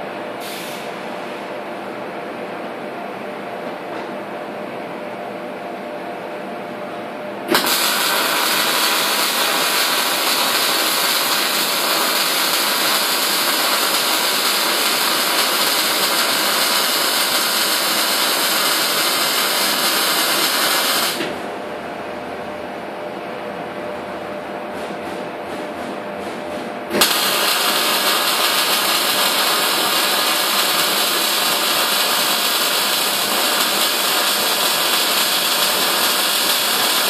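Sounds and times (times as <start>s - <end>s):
steady machine hum: 0.0s - 37.0s
welding arc hissing and crackling: 7.5s - 21.3s, 27.0s - 37.0s.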